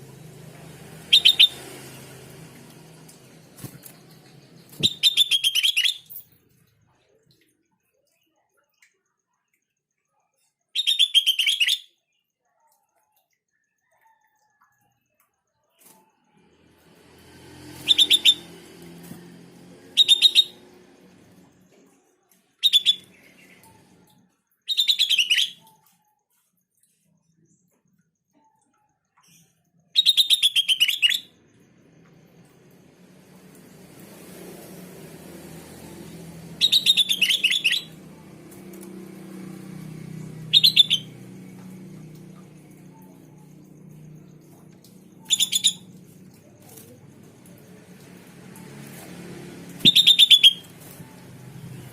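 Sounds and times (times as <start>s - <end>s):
bird chattering calls: 1.1s - 1.6s, 40.5s - 41.1s, 45.2s - 45.9s, 49.8s - 50.7s.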